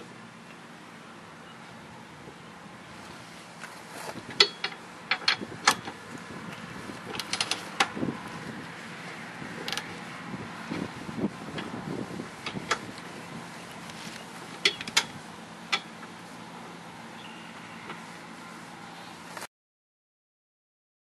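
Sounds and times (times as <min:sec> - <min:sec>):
metallic clicks and clanks of tools: 0:04.3 - 0:06.0, 0:07.1 - 0:07.9, 0:14.6 - 0:15.9.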